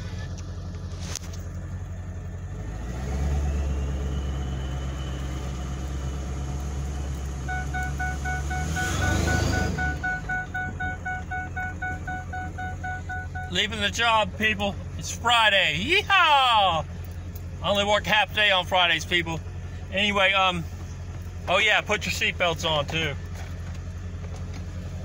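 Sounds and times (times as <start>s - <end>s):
car engine accelerating: 0.0s - 25.0s
turbocharger whistle: 3.2s - 6.3s, 7.4s - 13.6s
dashboard warning chime beeping: 7.4s - 14.3s.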